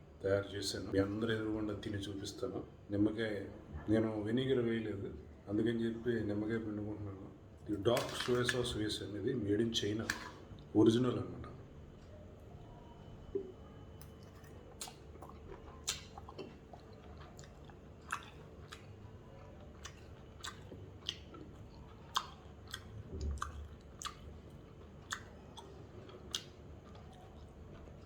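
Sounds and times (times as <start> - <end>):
man chewing with wet smacks: 11.9 - 28.0.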